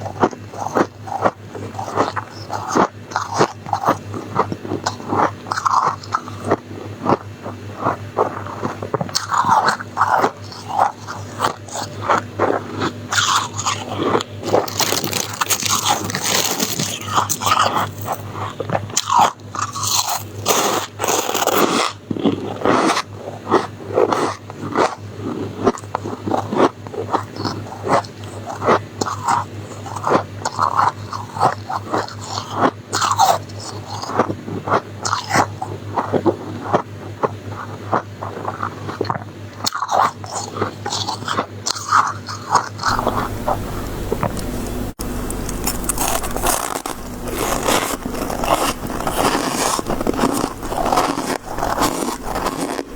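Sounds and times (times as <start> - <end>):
chewing crunchy ice: 0.0 - 52.9
scraping rustle: 42.9 - 52.9.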